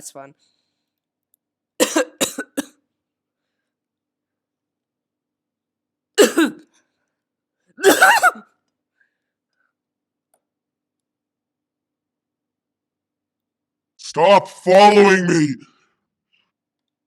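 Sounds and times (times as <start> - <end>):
man coughing: 1.8 - 2.7, 6.2 - 6.6, 7.8 - 8.4.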